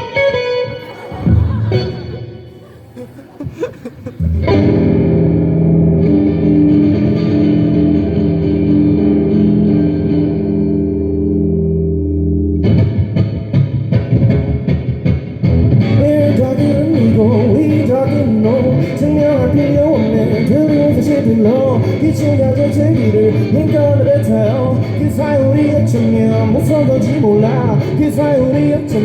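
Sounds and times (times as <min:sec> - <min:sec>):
wavering guitar melody: 0:00.0 - 0:03.2, 0:04.0 - 0:29.0
rhythmic guitar strumming: 0:00.0 - 0:29.0
electric guitar chord ringing: 0:04.2 - 0:29.0.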